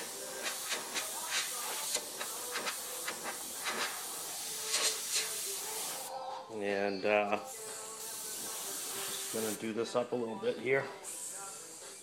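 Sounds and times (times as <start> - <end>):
airbrush spraying hiss: 0.0 - 6.1, 7.8 - 9.6.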